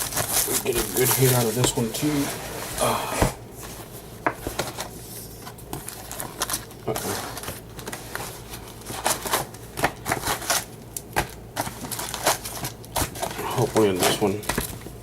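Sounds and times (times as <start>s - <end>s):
wrapper tearing and crinkling: 0.0s - 2.0s, 5.8s - 14.7s.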